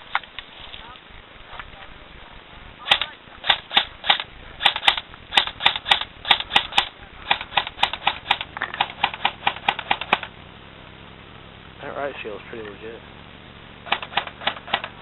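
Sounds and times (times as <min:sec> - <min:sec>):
airsoft gun shots: 0:02.8 - 0:10.3, 0:13.8 - 0:15.0.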